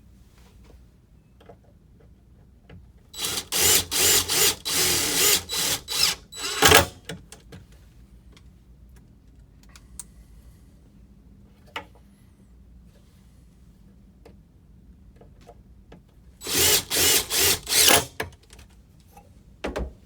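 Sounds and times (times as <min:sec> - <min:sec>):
power drill driving screws: 0:03.2 - 0:07.0, 0:16.4 - 0:18.2.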